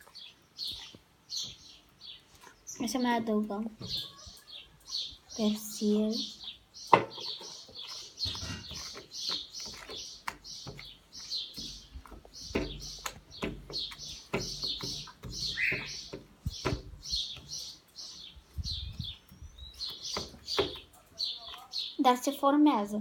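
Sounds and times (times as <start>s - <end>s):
bird chirping rapidly: 0.0s - 22.2s
slime being kneaded by hand: 7.3s - 17.8s.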